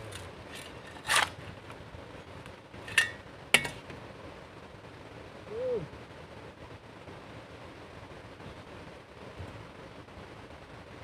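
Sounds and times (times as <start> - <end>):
hoot-like call: 5.5 - 5.9.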